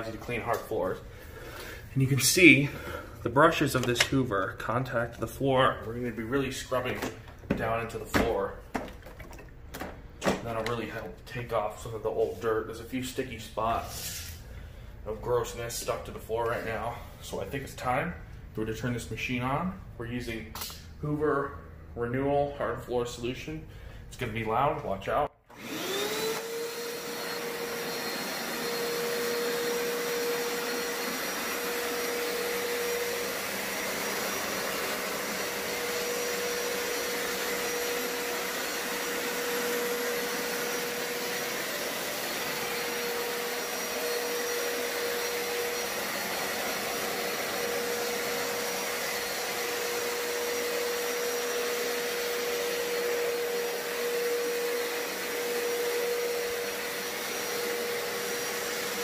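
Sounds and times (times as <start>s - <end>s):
carpet cleaner motor whining: 25.5s - 59.0s.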